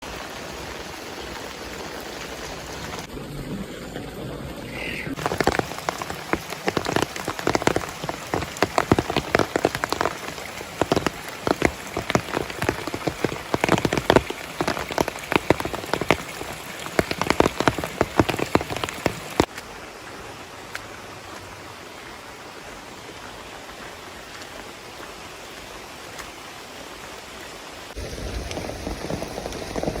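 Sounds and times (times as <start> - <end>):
rain hiss: 0.0 - 30.0.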